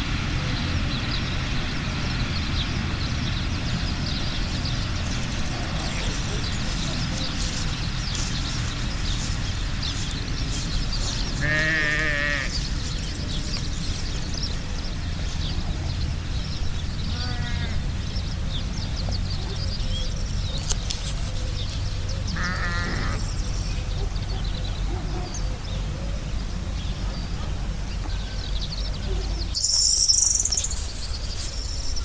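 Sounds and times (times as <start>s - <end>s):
steady low rumble: 0.0s - 32.0s
farm animal bleating: 11.3s - 12.6s, 17.1s - 17.8s, 22.3s - 23.3s
skylark twittering: 28.2s - 32.0s.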